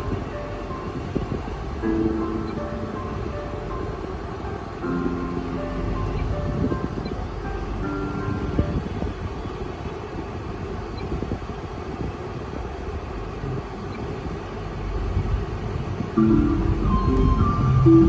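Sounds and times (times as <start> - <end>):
music: 0.0 - 9.3, 16.2 - 18.0
road and wind noise: 0.0 - 18.0.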